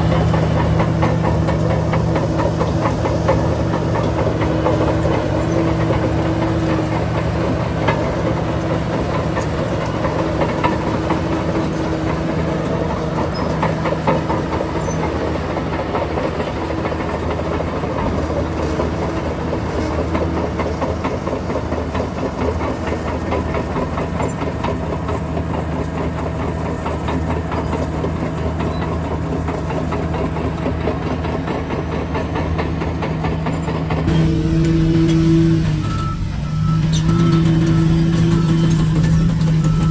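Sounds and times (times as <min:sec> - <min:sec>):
diesel earthmoving machinery running: 0:00.0 - 0:39.9
dense rattle: 0:34.0 - 0:39.9.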